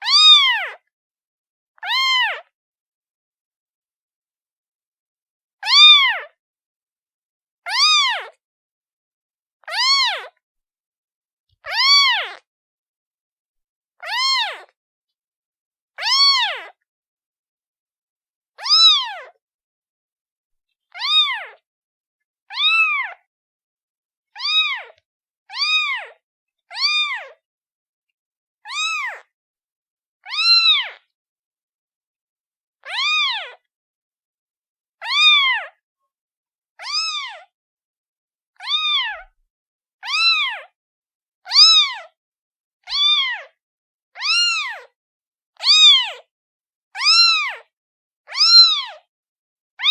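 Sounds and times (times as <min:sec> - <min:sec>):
kitten meowing: 0:00.0 - 0:00.8, 0:01.8 - 0:02.5, 0:05.6 - 0:06.3, 0:07.7 - 0:08.4, 0:09.7 - 0:10.3, 0:11.6 - 0:12.4, 0:14.0 - 0:14.7, 0:16.0 - 0:16.8, 0:18.6 - 0:19.4, 0:20.9 - 0:21.6, 0:22.5 - 0:23.2, 0:24.4 - 0:27.4, 0:28.7 - 0:29.3, 0:30.3 - 0:31.0, 0:32.9 - 0:33.6, 0:35.0 - 0:35.8, 0:36.8 - 0:37.5, 0:38.6 - 0:39.4, 0:40.0 - 0:40.7, 0:41.5 - 0:42.1, 0:42.9 - 0:43.6, 0:44.2 - 0:45.0, 0:45.6 - 0:46.2, 0:47.0 - 0:47.7, 0:48.3 - 0:49.0.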